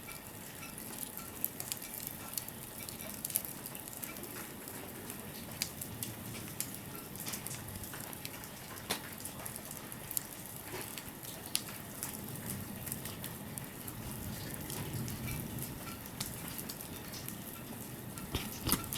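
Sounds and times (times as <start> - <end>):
fire popping: 18.2 - 18.9.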